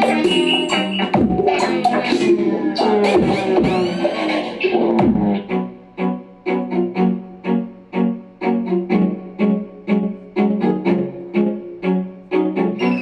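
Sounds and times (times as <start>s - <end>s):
remix music with repeating riff: 0.0s - 5.5s.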